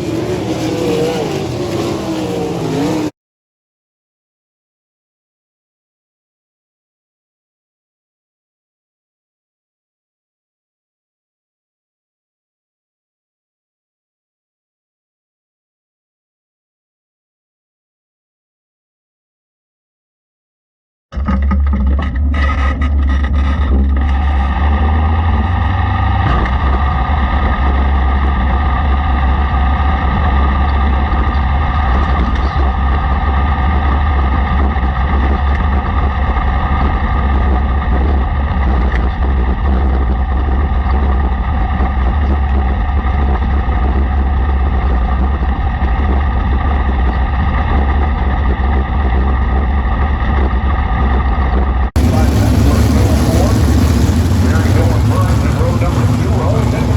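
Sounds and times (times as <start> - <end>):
race car engine running hard: 0.0 - 3.1, 21.3 - 56.9.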